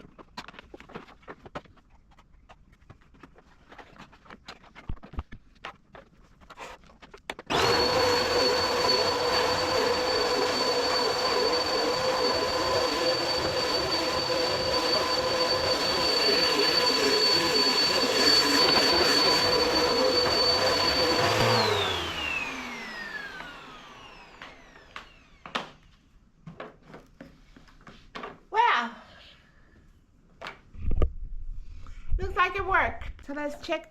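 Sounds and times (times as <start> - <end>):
vacuum cleaner motor whining: 7.4 - 25.8
vacuum cleaner switch: 7.5 - 25.7.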